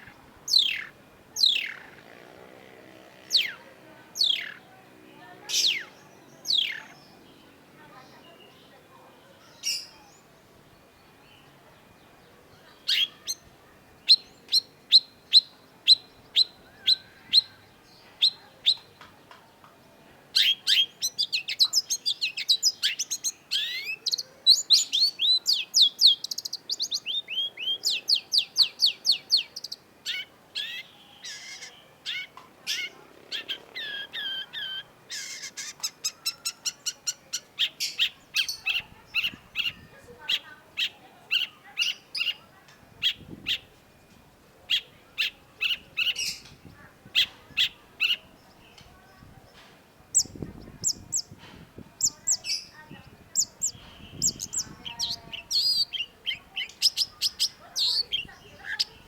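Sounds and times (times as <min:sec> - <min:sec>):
shrike singing: 0:00.0 - 0:04.7, 0:05.4 - 0:07.2, 0:50.1 - 0:59.0.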